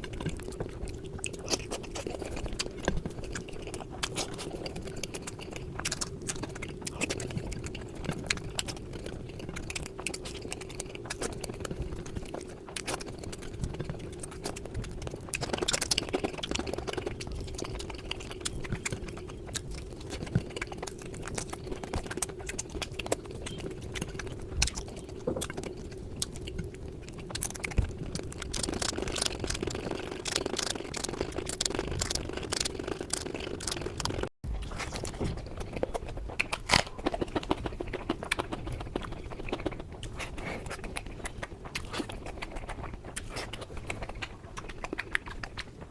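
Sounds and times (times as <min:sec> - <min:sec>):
person chewing: 0:00.0 - 0:45.9
steady low hum: 0:00.0 - 0:45.9.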